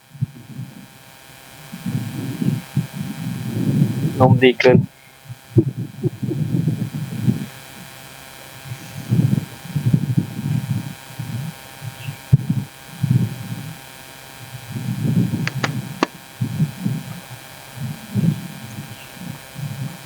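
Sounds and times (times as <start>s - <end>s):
quick clicks: 15.5s - 16.1s.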